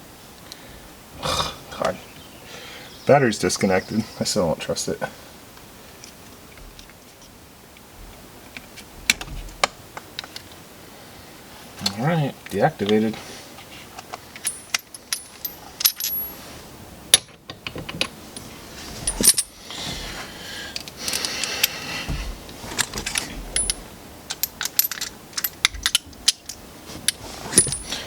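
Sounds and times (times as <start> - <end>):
metal hand tools clinking: 14.4 - 16.4, 18.0 - 19.8, 20.7 - 21.8, 22.8 - 28.0.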